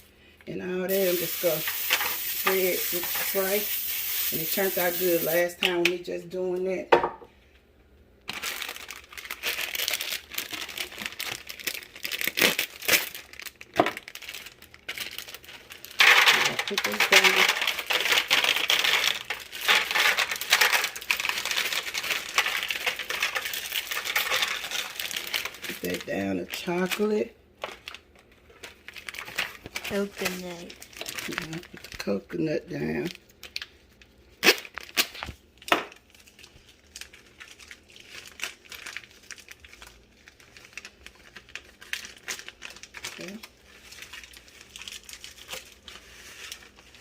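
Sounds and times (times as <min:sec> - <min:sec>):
chocolate chips shaken into pan: 0:00.9 - 0:05.6, 0:15.3 - 0:26.1
plastic bag crinkling: 0:00.9 - 0:05.6, 0:08.3 - 0:32.2, 0:32.8 - 0:47.0.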